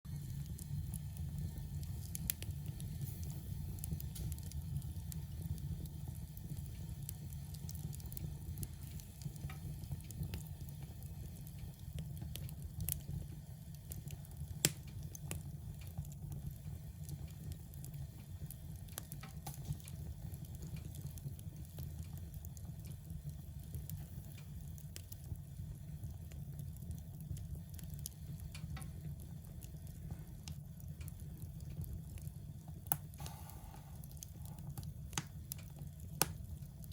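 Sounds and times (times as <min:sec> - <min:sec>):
fire crackles: 0:00.1 - 0:36.9
fire rumbling in fireplace: 0:00.1 - 0:36.9
sharp pop of fire: 0:01.9 - 0:04.5, 0:14.6 - 0:15.0, 0:32.9 - 0:34.1, 0:36.2 - 0:36.4.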